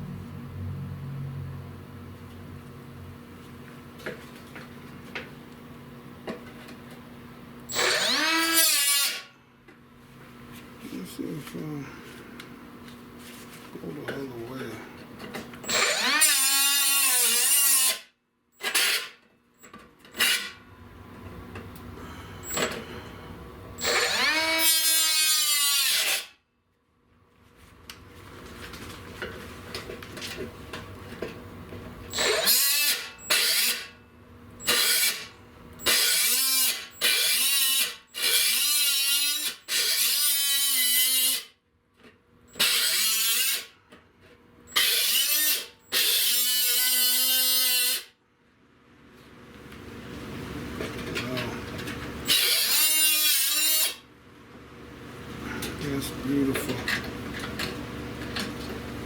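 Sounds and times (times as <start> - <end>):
power tool cutting sheet steel: 7.7 - 9.3, 15.6 - 19.2, 20.2 - 20.6, 23.8 - 26.4, 32.1 - 34.0, 34.6 - 41.6, 42.5 - 43.8, 44.7 - 48.2, 52.2 - 54.0.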